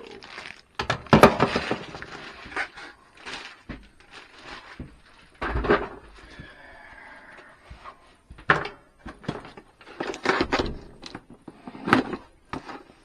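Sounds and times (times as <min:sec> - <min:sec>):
packaging rustling: 0:00.0 - 0:06.8.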